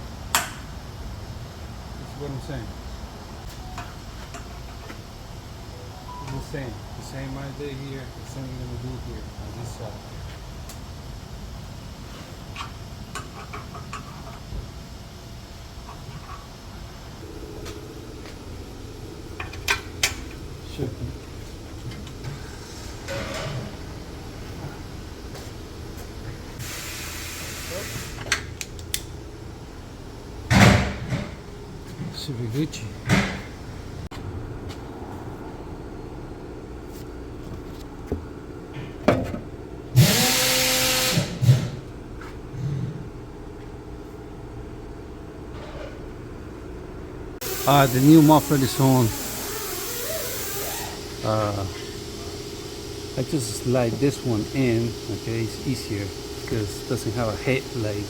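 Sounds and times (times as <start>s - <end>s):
low pulsing buzz: 14.0s - 58.0s
steady low rumble: 17.1s - 26.6s
power tool whining: 40.0s - 41.5s, 47.4s - 58.0s.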